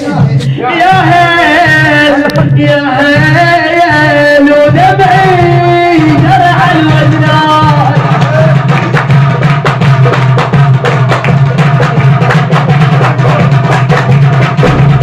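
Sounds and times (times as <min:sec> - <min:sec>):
drums beating fast rhythm: 0:00.0 - 0:15.0.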